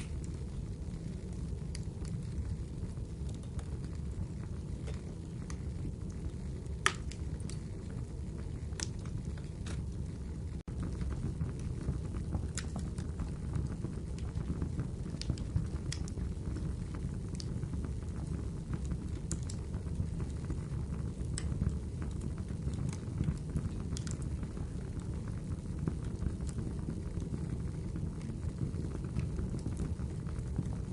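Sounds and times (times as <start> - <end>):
fire crackles: 0.0 - 30.9
fireplace fire rumbling: 0.0 - 30.9
low rush of burning: 0.0 - 30.9.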